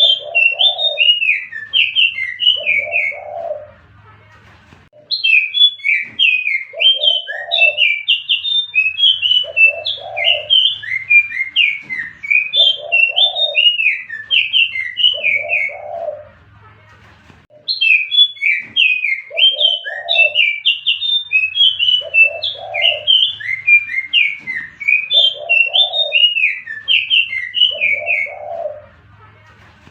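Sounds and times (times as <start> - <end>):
songbird chattering song: 17.5 - 28.8.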